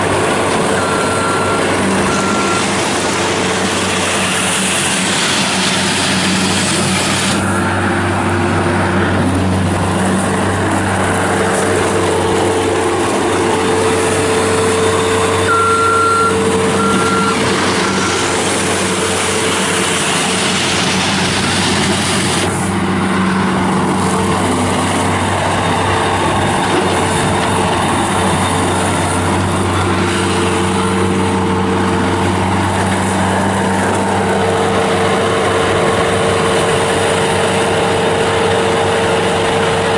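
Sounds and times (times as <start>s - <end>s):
diesel engine running: 0.0s - 39.9s
short high beeps: 15.4s - 18.1s.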